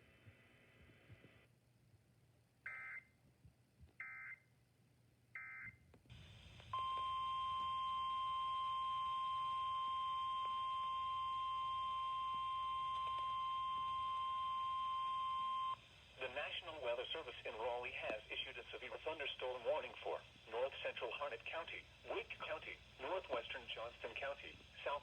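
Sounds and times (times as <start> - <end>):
steady warning alarm tone: 6.7 - 15.9.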